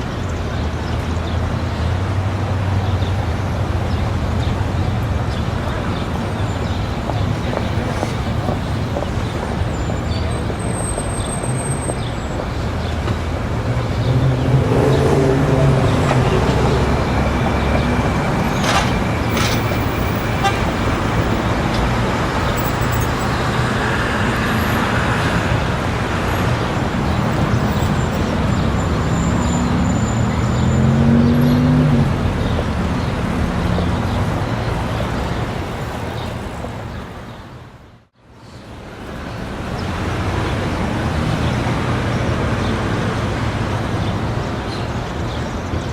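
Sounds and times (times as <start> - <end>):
vehicle engines passing: 0.0 - 38.1, 38.7 - 45.9
traffic: 0.0 - 45.9
crowd chatter: 2.5 - 23.5.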